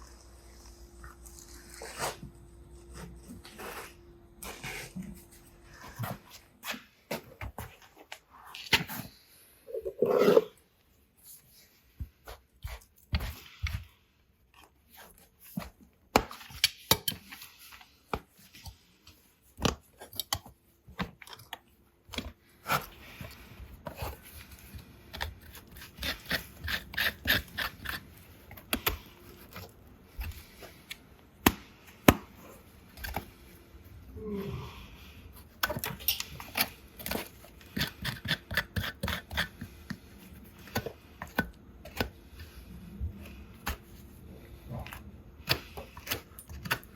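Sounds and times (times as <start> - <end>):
tools scraping and clipping hoof: 19.6 - 33.5, 35.6 - 42.7.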